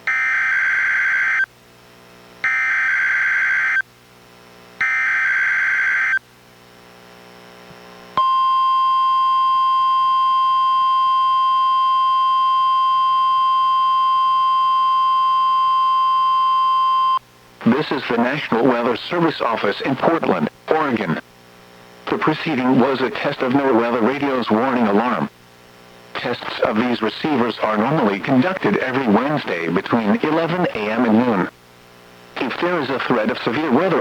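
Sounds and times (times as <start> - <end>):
steady warning alarm tone: 0.0 - 1.5, 2.4 - 3.8, 4.8 - 6.2, 8.2 - 17.2.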